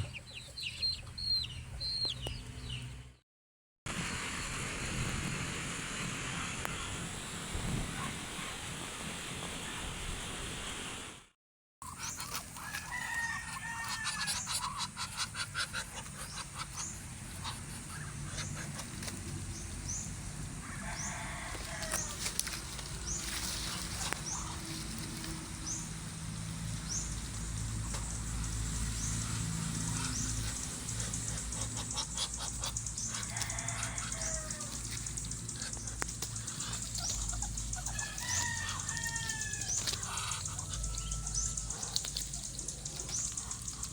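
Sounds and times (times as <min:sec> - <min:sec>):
chickens calling: 0:00.0 - 0:02.8, 0:11.8 - 0:43.9
rooster crowing: 0:12.6 - 0:14.6, 0:20.6 - 0:22.5, 0:33.1 - 0:35.0, 0:37.8 - 0:42.2.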